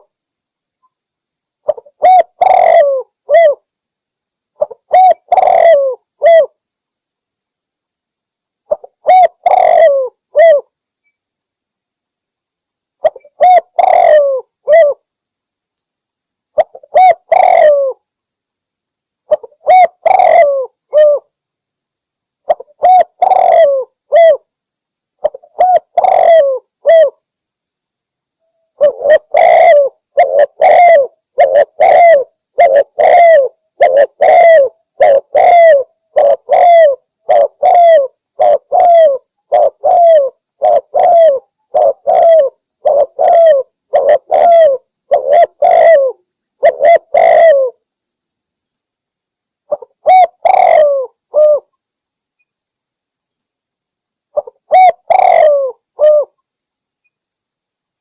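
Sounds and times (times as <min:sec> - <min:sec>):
dove cooing: 0:01.7 - 0:03.6, 0:04.6 - 0:06.6, 0:08.7 - 0:10.7, 0:13.0 - 0:15.0, 0:16.6 - 0:18.0, 0:19.3 - 0:21.3, 0:22.5 - 0:24.5, 0:25.2 - 0:27.2, 0:28.8 - 0:47.8, 0:49.7 - 0:51.7, 0:54.4 - 0:56.4.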